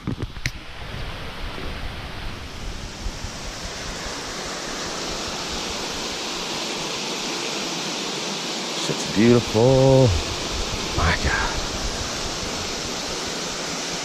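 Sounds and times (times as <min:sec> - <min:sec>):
wind rumble on microphone: 0:00.0 - 0:05.8, 0:09.9 - 0:13.7
waterfall rushing: 0:08.8 - 0:14.0.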